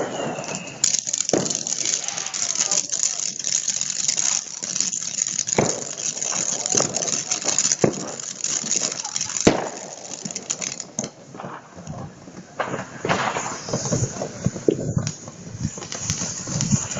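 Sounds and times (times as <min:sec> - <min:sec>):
fireworks crackling: 0:00.0 - 0:16.9
sharp firework bangs: 0:00.0 - 0:16.9.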